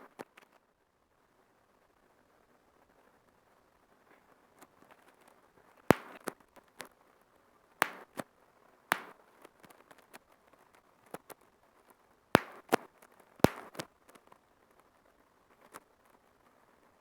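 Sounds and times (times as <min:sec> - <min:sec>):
bubble wrap popping: 0:05.9 - 0:06.3, 0:07.8 - 0:08.2, 0:08.9 - 0:09.1, 0:12.4 - 0:12.8, 0:13.4 - 0:13.9.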